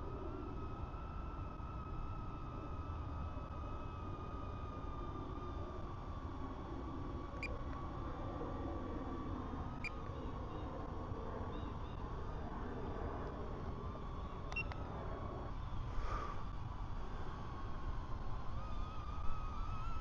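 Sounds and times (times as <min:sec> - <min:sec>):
faint wavering high hum: 0:00.0 - 0:20.0.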